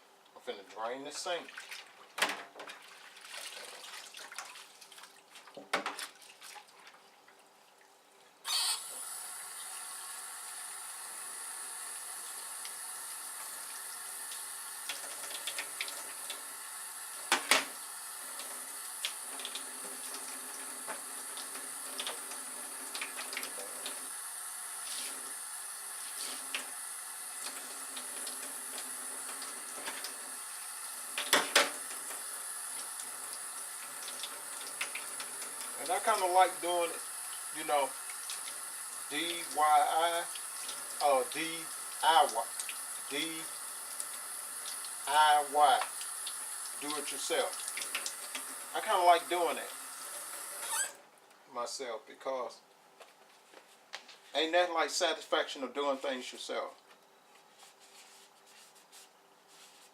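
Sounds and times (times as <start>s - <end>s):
water running into a sink: 9.0s - 50.7s.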